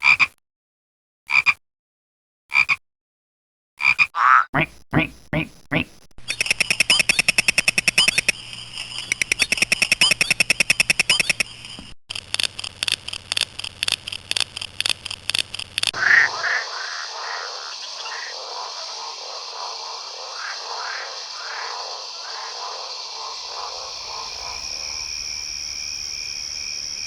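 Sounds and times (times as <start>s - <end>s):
frog chorus: 15.9s - 27.0s
frog pulsed trill: 16.0s - 27.0s.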